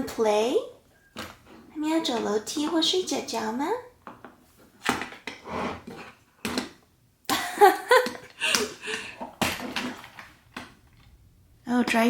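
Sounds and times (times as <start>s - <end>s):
wooden toys clattering: 8.1s - 11.1s.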